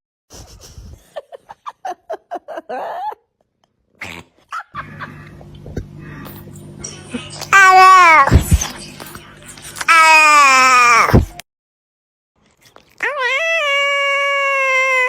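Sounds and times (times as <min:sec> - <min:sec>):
steady low hum: 0:04.8 - 0:09.9.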